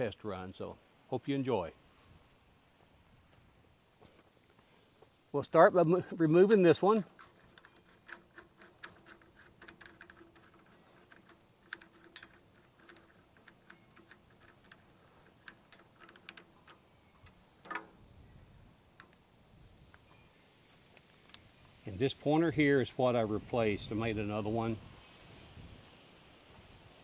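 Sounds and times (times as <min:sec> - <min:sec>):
small clicks of hand work: 0:07.1 - 0:18.0.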